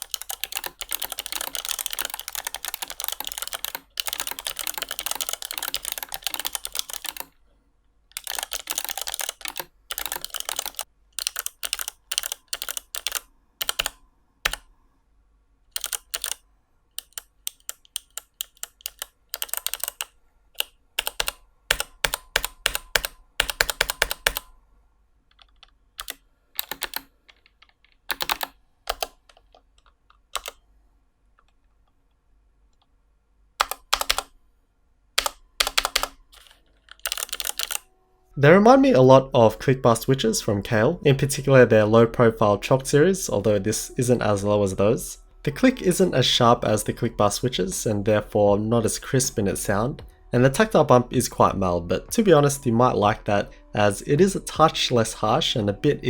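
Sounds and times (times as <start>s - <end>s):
clicky mechanical keyboard typing: 0.0s - 7.4s, 8.1s - 14.7s, 15.7s - 16.4s, 17.0s - 24.5s, 25.3s - 30.6s, 33.6s - 34.3s, 35.2s - 37.8s.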